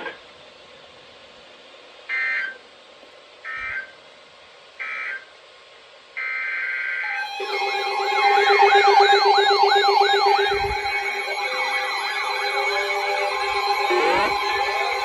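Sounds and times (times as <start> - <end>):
steady alert tone: 7.2 - 15.0
warbling digital data bursts: 7.2 - 15.0.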